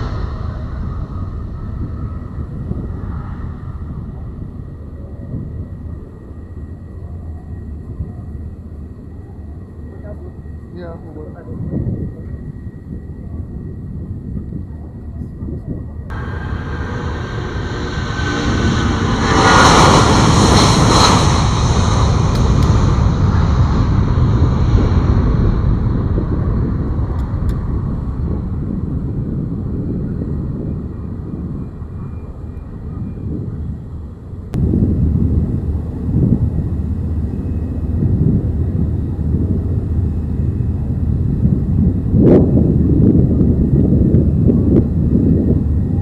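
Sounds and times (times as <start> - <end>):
turboprop engines rumbling: 0.0 - 46.0
bright engine whine: 16.1 - 33.4, 34.6 - 46.0.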